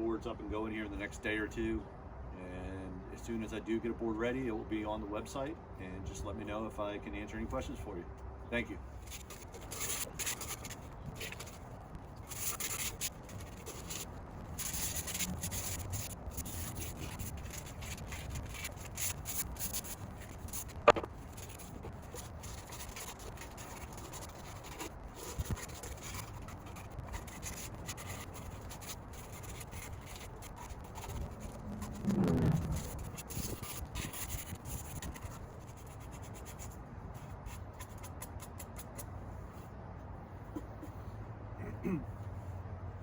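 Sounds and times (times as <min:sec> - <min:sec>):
sandpaper rubbing on wood: 0:09.1 - 0:36.6.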